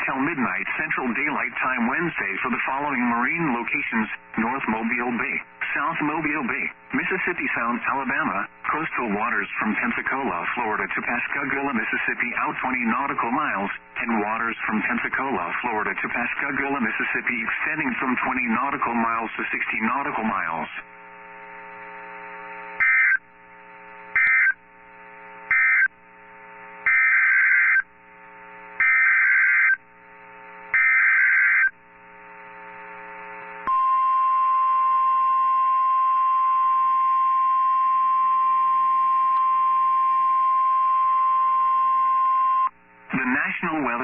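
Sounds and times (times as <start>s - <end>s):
faint hum: 0.0s - 44.0s
steady warning alarm tone: 22.8s - 23.3s, 24.1s - 24.6s, 25.5s - 26.0s, 26.8s - 27.9s, 28.8s - 29.8s, 30.7s - 31.8s
buzzy data bursts: 24.1s - 24.6s, 25.4s - 25.9s.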